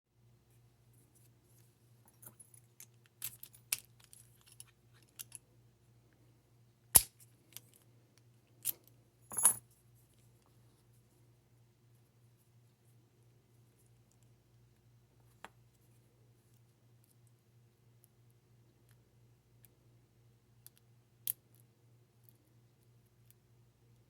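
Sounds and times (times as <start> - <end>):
padlock metal clicks and jingles: 2.2 - 5.4.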